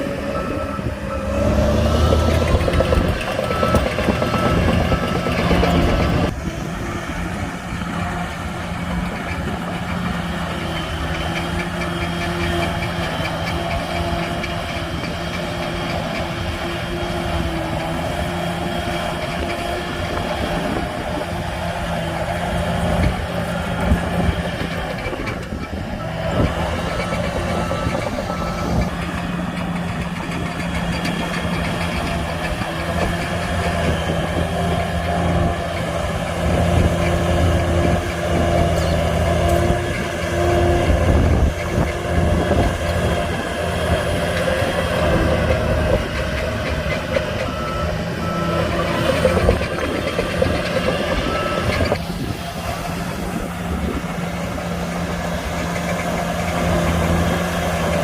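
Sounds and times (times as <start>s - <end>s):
reversing alarm beeping: 0.0s - 6.3s, 26.8s - 29.3s, 45.2s - 52.0s
heavy diesel engines droning: 0.0s - 58.0s.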